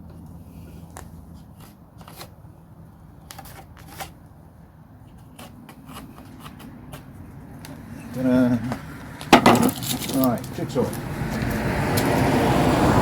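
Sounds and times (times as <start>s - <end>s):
wood knock: 9.3s - 9.8s.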